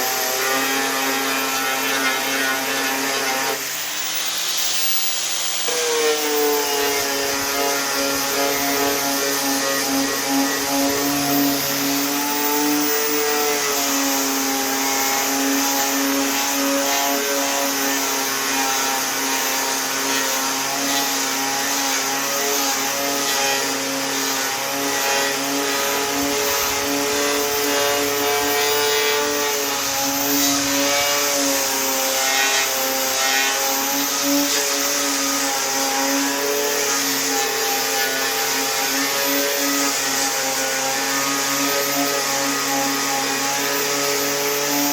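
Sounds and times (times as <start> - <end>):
angle grinder grinding metal: 0.0 - 44.9.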